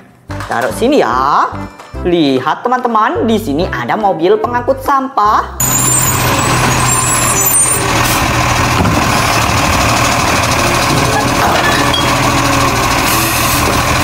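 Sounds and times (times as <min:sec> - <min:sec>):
garbage truck engine idling: 0:05.6 - 0:14.0.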